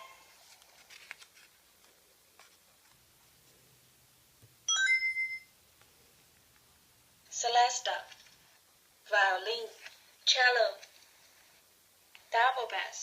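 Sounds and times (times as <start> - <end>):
electronic jingle through small speaker: 4.7 - 5.5.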